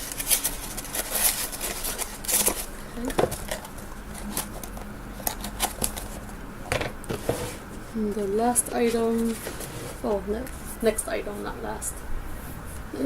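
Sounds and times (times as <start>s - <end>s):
packaging being handled: 0.0s - 6.4s
rustling: 8.7s - 10.8s.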